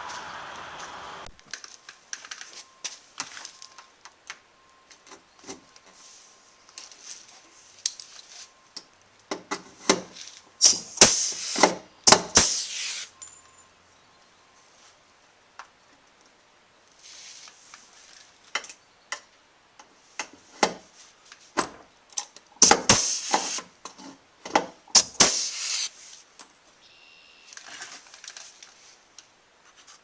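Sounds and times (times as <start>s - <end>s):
scraping or rustling: 17.0s - 18.5s.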